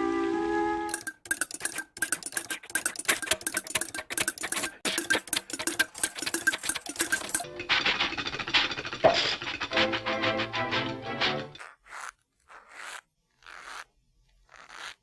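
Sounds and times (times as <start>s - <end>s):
cartoon mechanical tapping clatter: 0.9s - 10.1s.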